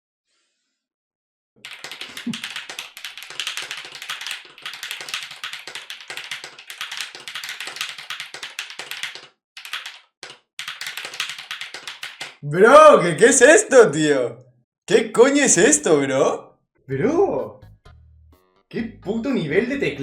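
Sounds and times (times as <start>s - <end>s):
mechanical keyboard typing: 1.6s - 12.4s.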